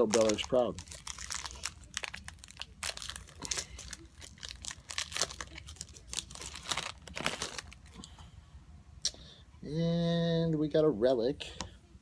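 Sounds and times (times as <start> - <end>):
card pack wrapper crinkling: 0.0 - 8.0.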